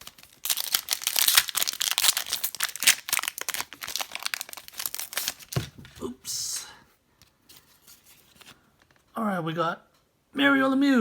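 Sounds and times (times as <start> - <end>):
plastic wrapper crinkling and tearing: 0.0 - 5.7.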